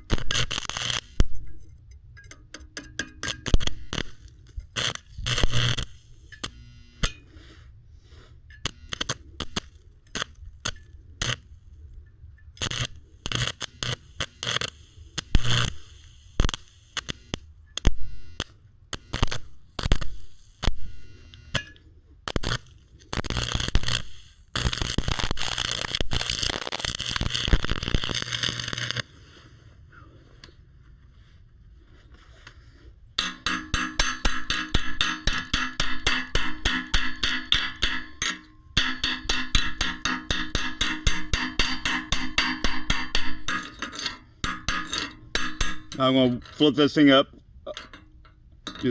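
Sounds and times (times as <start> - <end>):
metal knocks and clicks: 1.4 - 3.5
ringing metal strikes: 33.2 - 46.6.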